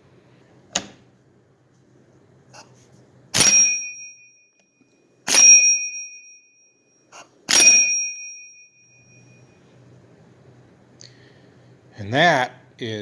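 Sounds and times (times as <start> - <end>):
metal-on-metal strikes ringing: 3.4 - 4.2, 5.3 - 6.2, 7.5 - 9.4.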